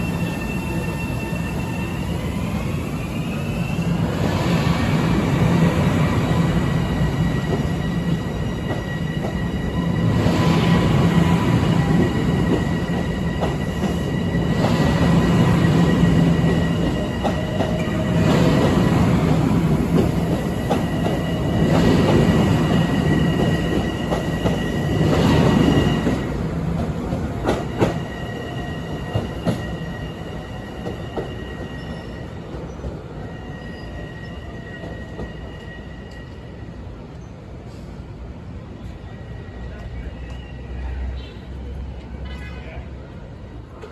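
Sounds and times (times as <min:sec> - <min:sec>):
high-pitched wheel squeal: 0:00.0 - 0:04.3
train rumbling past: 0:00.0 - 0:42.2.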